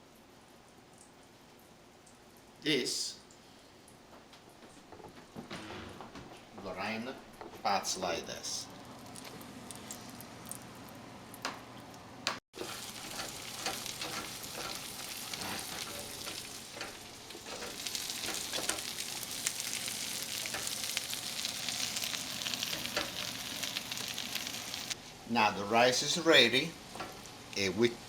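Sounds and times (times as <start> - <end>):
cutlets sizzling in a pan: 12.6 - 25.0.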